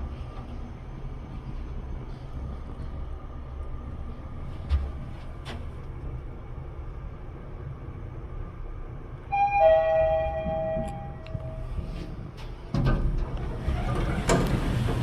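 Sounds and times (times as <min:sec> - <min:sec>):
elevator humming: 0:00.0 - 0:15.0
elevator arrival chime: 0:09.3 - 0:12.0.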